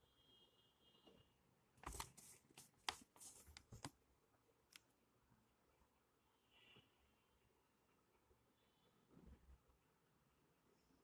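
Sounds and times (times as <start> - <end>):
faint high-pitched tone: 0.0 - 1.5, 8.4 - 9.4
packaging rustling: 1.8 - 3.9.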